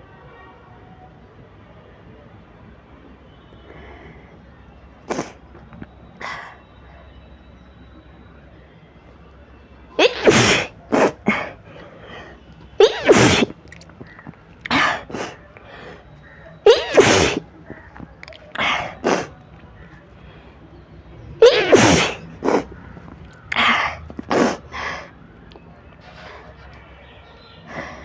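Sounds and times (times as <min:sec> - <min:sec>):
woman sneezing: 0:10.0 - 0:11.6, 0:12.8 - 0:13.6, 0:16.6 - 0:17.4, 0:21.4 - 0:22.7.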